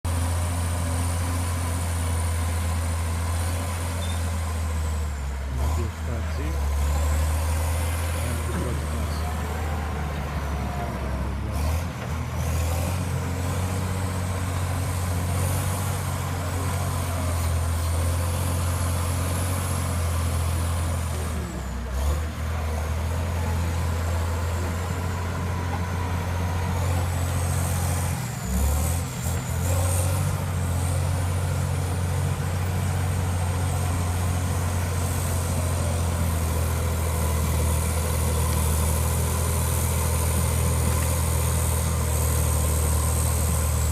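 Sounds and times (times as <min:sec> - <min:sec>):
bulldozer diesel engine droning: 0:00.0 - 0:43.9.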